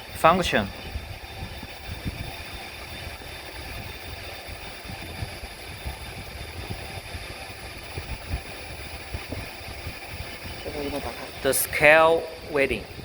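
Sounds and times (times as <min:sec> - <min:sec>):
machinery humming: 0:00.0 - 0:13.0.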